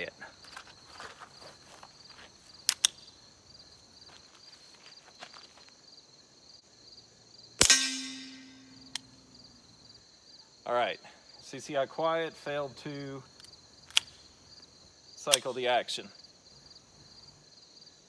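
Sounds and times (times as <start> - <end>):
crickets chirping: 0.0 - 18.0
sharp clicks: 2.6 - 3.1, 13.4 - 14.3
suppressed pistol shot: 7.6 - 9.2.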